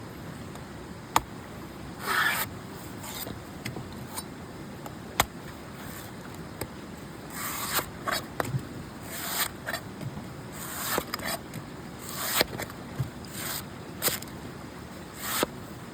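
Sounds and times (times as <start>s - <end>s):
coconut scraping: 2.0s - 3.4s, 5.2s - 6.2s, 7.3s - 8.4s, 9.0s - 9.9s, 10.5s - 14.3s, 15.1s - 15.6s.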